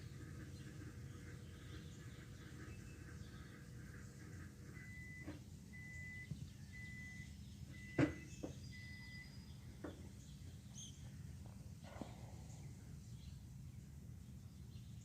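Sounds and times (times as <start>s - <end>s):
microwave oven beeping: 2.6s - 10.0s.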